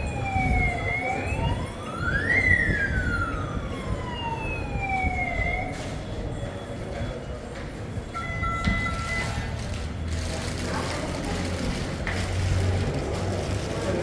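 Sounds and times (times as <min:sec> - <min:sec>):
fire alarm siren wailing: 0:00.0 - 0:05.9, 0:08.2 - 0:09.4.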